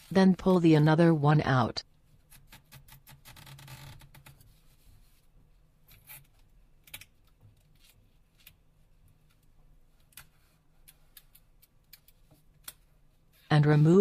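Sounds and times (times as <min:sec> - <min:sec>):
tape being pulled scratchy rustle: 0:02.2 - 0:05.3.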